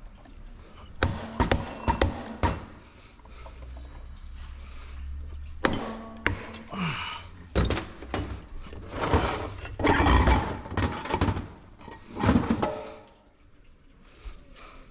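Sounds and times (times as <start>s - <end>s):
metal parts knocking and clanking: 1.0s - 2.9s, 5.6s - 13.0s
metal scraping: 8.2s - 12.9s.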